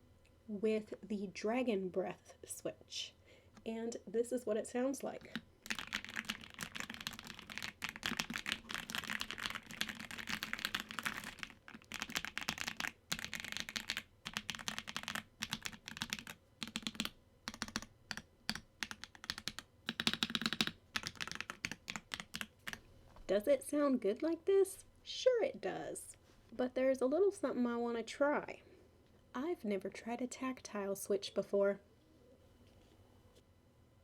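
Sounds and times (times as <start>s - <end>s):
mechanical keyboard typing: 5.2s - 22.8s.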